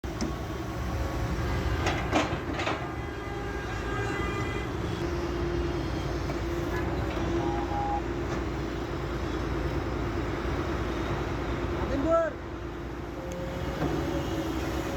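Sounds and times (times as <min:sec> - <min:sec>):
excavator diesel engine running: 0:00.0 - 0:03.2, 0:04.8 - 0:14.9
hydraulic whine: 0:04.9 - 0:09.8.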